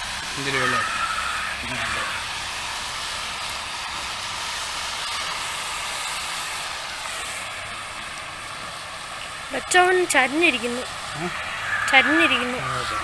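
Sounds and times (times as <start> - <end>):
pot sizzling over campfire: 0.0 - 13.0.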